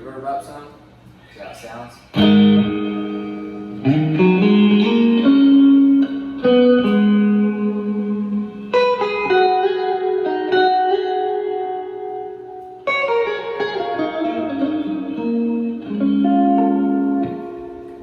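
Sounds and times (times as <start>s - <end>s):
electric guitar with reverb: 2.0s - 18.0s.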